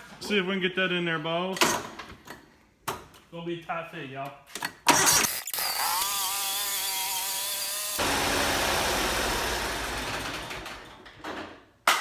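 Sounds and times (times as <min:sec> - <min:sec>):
lawn mower engine running: 0:08.0 - 0:11.0.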